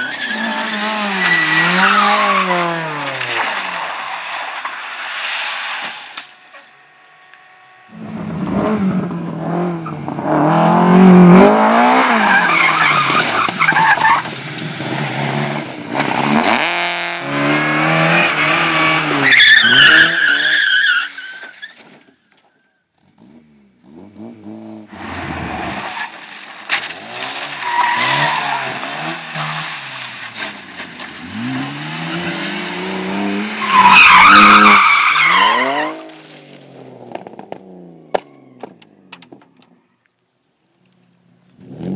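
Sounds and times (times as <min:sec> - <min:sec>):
tyres squealing: 0:00.0 - 0:03.6, 0:31.8 - 0:36.1
rally car engines revving: 0:00.0 - 0:20.8, 0:23.0 - 0:38.9, 0:41.5 - 0:41.9.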